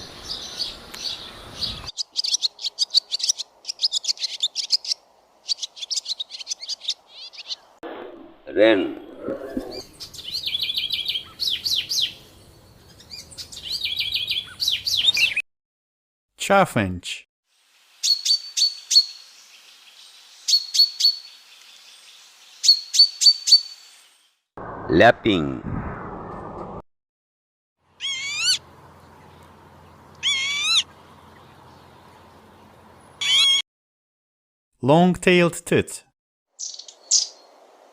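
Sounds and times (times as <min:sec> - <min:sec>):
wren singing trills: 0:00.0 - 0:07.8, 0:09.8 - 0:15.4, 0:18.0 - 0:19.3, 0:19.9 - 0:21.4, 0:22.6 - 0:23.8, 0:28.0 - 0:33.6, 0:36.5 - 0:37.6
lapwing calling: 0:00.2 - 0:07.8, 0:09.1 - 0:12.2, 0:27.9 - 0:33.6, 0:36.6 - 0:37.5.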